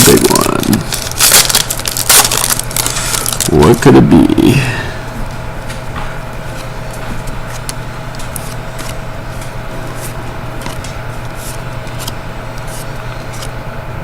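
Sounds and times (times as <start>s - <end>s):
card pack crinkling: 0.0s - 4.5s, 7.4s - 13.6s
steady low hum: 0.0s - 14.0s.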